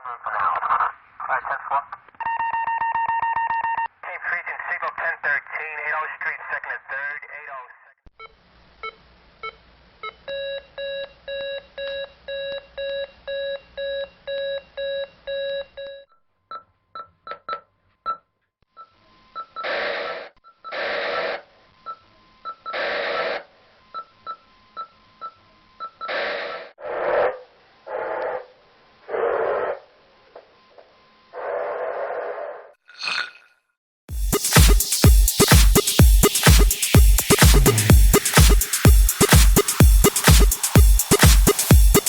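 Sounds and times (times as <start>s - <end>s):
radio static: 0.0s - 2.1s, 4.0s - 7.7s.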